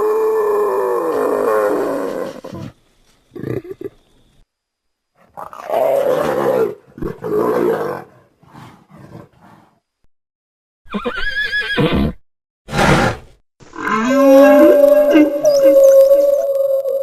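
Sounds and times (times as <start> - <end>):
long layered animal call: 13.7 - 17.0
whinny-like animal call: 13.8 - 17.0.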